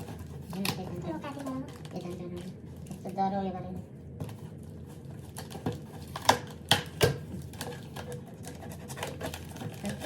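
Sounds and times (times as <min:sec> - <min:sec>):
parcel being unpacked: 0:04.2 - 0:10.0.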